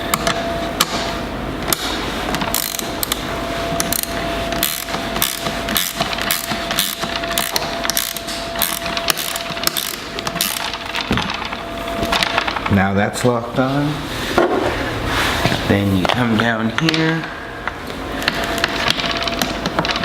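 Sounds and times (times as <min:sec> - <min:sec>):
ratchet wrench clicking: 0:02.5 - 0:03.2, 0:03.8 - 0:10.7.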